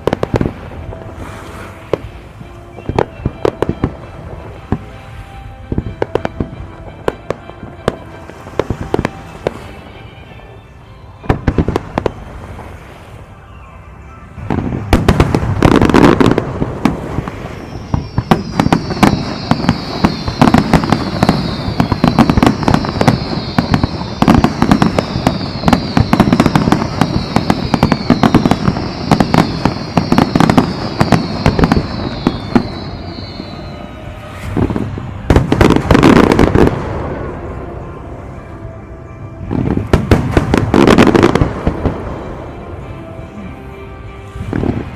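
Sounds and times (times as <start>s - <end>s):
fireworks popping and crackling: 0.0s - 1.0s, 2.8s - 4.8s, 5.7s - 9.6s, 11.3s - 12.3s, 14.4s - 37.0s, 39.6s - 42.0s.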